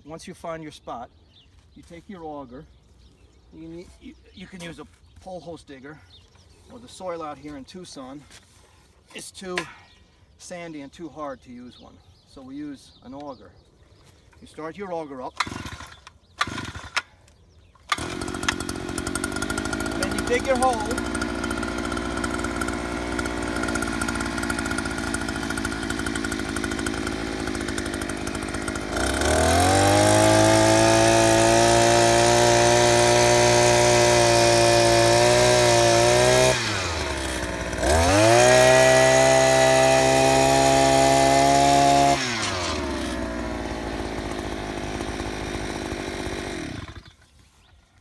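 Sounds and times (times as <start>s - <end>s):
earth auger engine revving: 15.4s - 17.1s, 17.8s - 47.2s.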